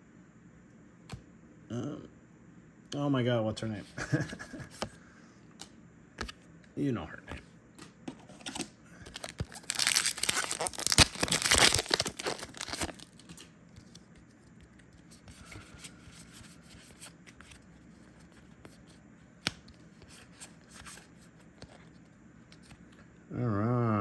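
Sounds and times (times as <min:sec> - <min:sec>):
wrapper tearing open: 0:09.1 - 0:13.4.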